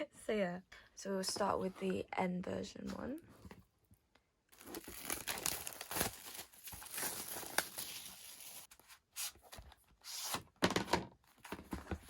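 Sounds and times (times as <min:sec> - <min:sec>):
plastic wrapping crinkling: 0:04.6 - 0:08.7.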